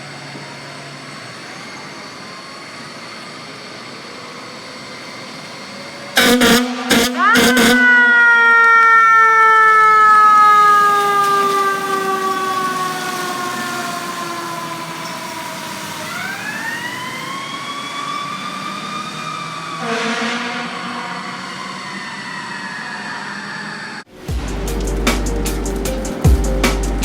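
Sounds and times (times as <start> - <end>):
fire truck siren winding: 0.0 - 24.1
air horn blast: 6.2 - 8.8, 19.8 - 22.0.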